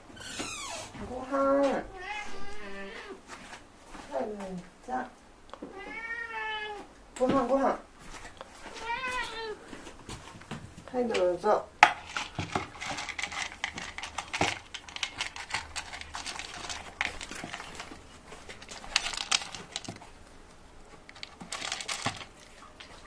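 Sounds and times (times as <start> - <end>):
cat crunching food: 11.8 - 23.0.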